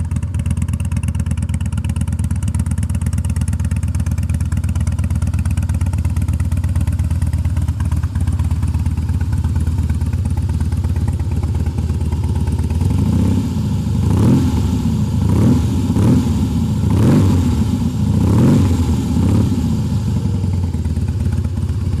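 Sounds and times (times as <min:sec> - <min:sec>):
motorcycle engine idling: 0:00.0 - 0:22.0
motorcycle engine revving: 0:00.0 - 0:22.0.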